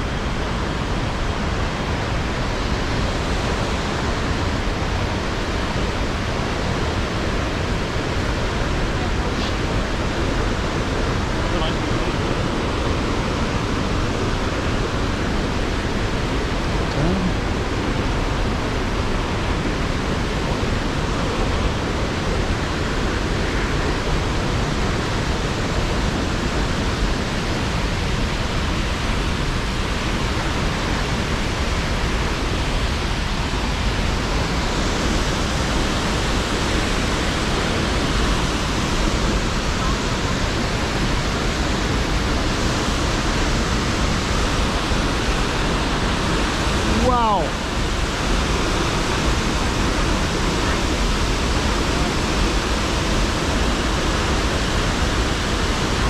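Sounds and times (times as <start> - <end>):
waterfall rushing: 0.0 - 56.0.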